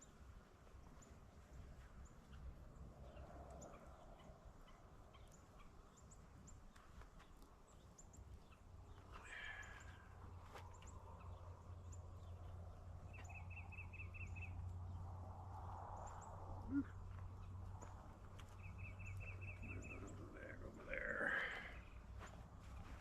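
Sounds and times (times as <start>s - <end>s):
faint bird chirps: 0.8s - 15.1s, 15.7s - 22.2s
bird trill: 13.1s - 14.6s.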